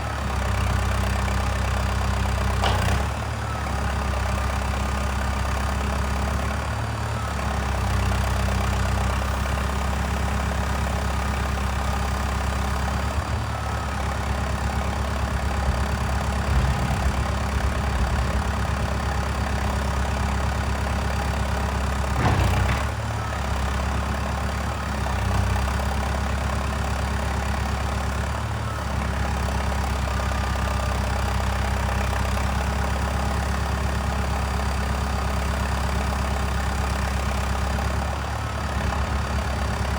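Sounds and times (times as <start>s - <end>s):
diesel engine running: 0.0s - 39.9s
sharp clunk: 2.6s - 3.1s, 22.2s - 22.9s.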